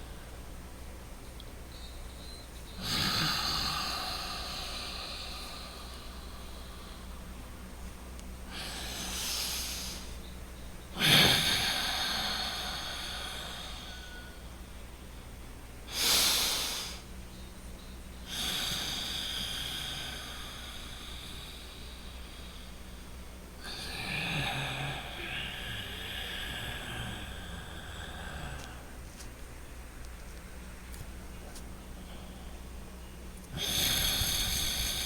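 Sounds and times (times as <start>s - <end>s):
man breathing through nose: 2.8s - 7.7s, 8.4s - 14.4s, 15.9s - 17.1s, 18.3s - 29.0s, 33.5s - 35.0s.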